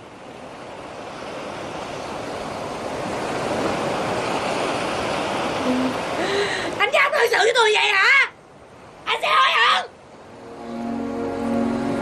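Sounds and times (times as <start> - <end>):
steady rushing noise: 10.2 - 12.0.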